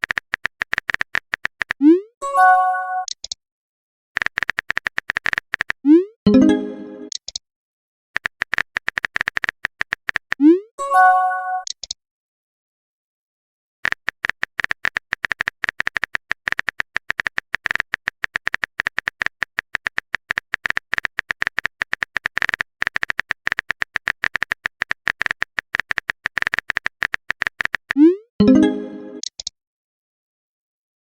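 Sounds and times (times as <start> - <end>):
keyboard typing clicks: 0.0 - 1.9, 3.0 - 3.4, 4.2 - 7.4, 8.2 - 10.5, 11.6 - 12.0, 13.8 - 29.5.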